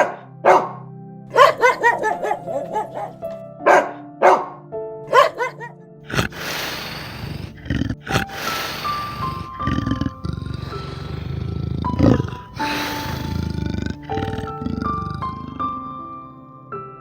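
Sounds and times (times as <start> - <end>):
dog barking: 0.0 - 10.0
background music: 0.0 - 17.0
loud rough hissing noise: 6.1 - 14.2.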